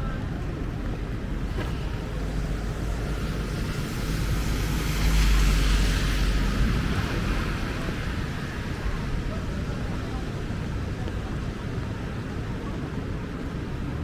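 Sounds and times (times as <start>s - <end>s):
heavy rain on street: 0.0s - 14.0s
vehicle passing on wet road: 1.4s - 10.9s.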